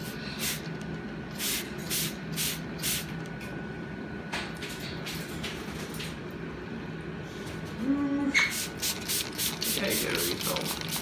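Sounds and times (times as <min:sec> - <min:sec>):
steady low hum: 0:00.0 - 0:10.0
spray bottle squirting: 0:08.5 - 0:11.0.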